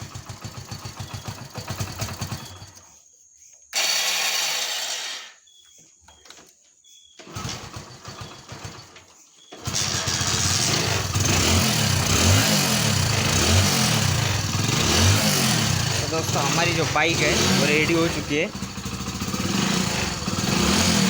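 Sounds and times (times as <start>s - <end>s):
motorcycle engine revving: 0.0s - 2.8s, 7.2s - 9.0s, 9.6s - 21.0s
motorcycle engine cranking: 0.0s - 2.9s, 7.2s - 21.0s.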